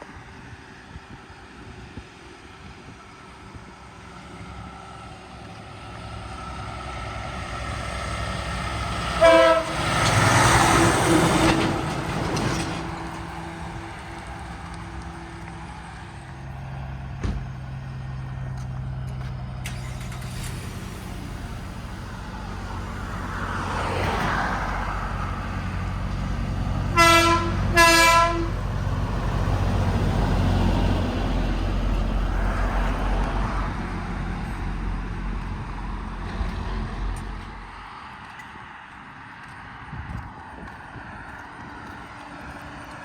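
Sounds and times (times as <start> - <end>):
trucks driving past: 0.0 - 43.0
vehicle horn toots: 9.2 - 9.9, 26.9 - 28.6.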